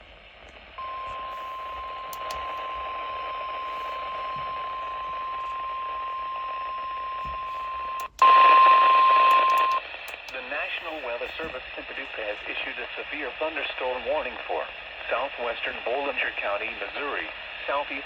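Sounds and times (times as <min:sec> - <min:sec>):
radio static: 0:00.0 - 0:18.0
steady alarm tone: 0:00.8 - 0:09.8.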